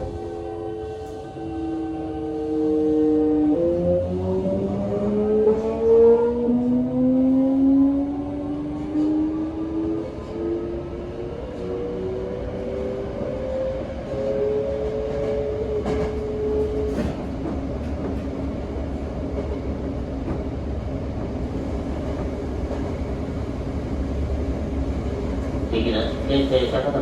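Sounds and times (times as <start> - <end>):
train running gear rumble: 11.4 - 27.0
train inverter whine: 21.6 - 27.0.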